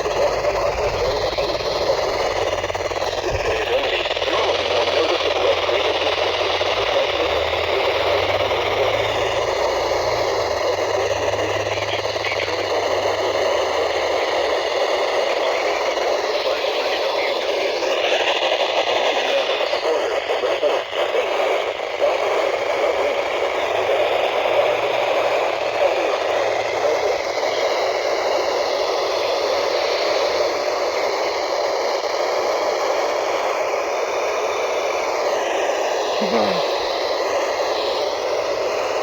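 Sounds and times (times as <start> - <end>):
radio static hiss: 0.0 - 39.0.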